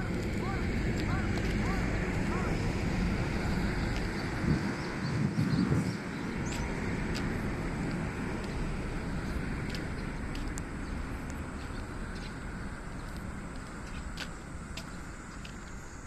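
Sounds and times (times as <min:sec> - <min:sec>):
vehicle engine rumble: 0:00.0 - 0:16.0.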